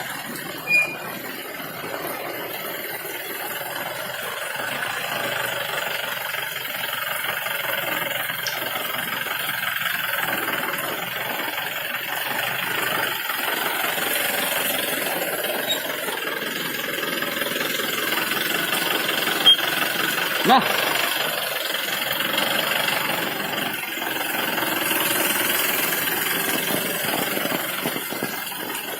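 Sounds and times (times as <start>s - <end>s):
car engine running: 0.0s - 28.9s
brief high-pitched chirp: 0.7s - 1.0s.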